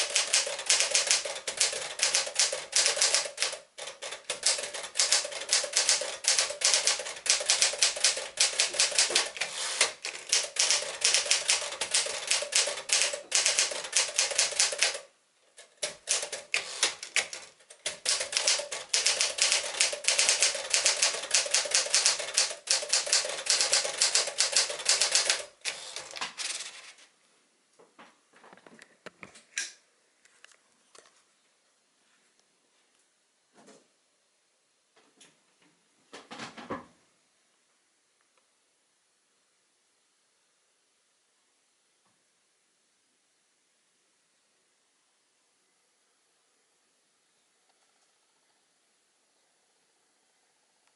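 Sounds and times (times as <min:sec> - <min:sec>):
typewriter keystrokes clacking: 0:00.0 - 0:15.1, 0:15.7 - 0:26.2.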